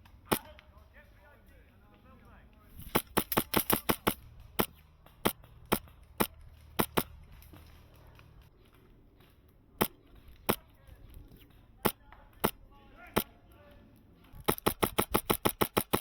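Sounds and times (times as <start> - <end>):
airsoft rifle shots: 0.3 - 0.8, 2.8 - 8.0, 9.8 - 13.5, 14.4 - 16.0.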